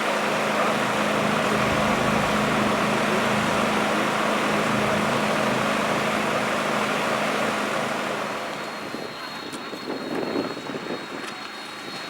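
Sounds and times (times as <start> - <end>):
machine motor running: 0.0 - 8.9
low hum: 0.2 - 8.9.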